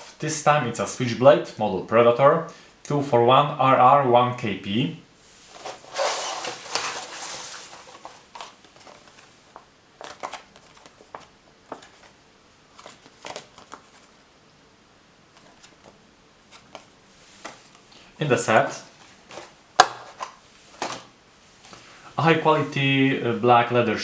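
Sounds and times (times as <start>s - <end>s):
packaging rustling and crinkling: 5.5s - 14.2s.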